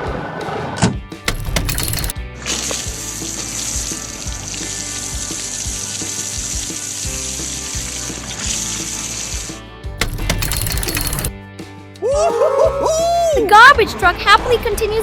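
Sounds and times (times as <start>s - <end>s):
light background music: 1.3s - 2.1s, 10.0s - 11.7s.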